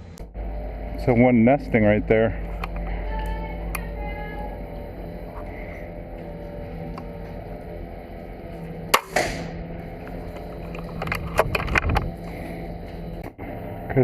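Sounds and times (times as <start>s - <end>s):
steady mechanical hum: 0.0s - 14.0s
sharp ringing crack: 8.9s - 9.7s.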